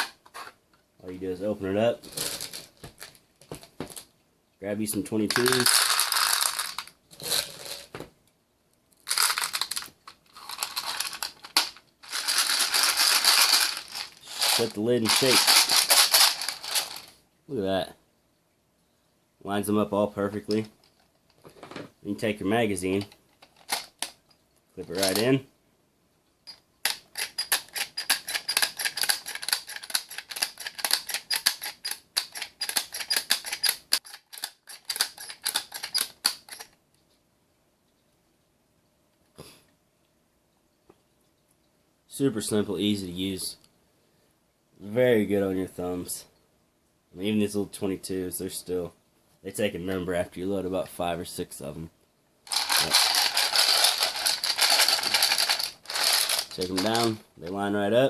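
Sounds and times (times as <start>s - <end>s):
cartridges clattering and rustling: 5.3s - 7.9s, 9.1s - 17.1s, 26.5s - 36.7s, 52.5s - 57.2s.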